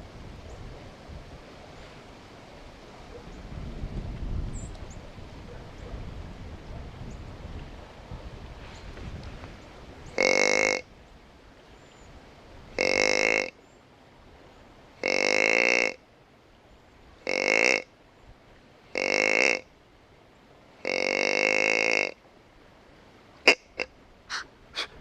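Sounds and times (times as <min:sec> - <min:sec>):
deer grunting: 0:12.8 - 0:13.5, 0:20.8 - 0:22.2, 0:23.5 - 0:25.0.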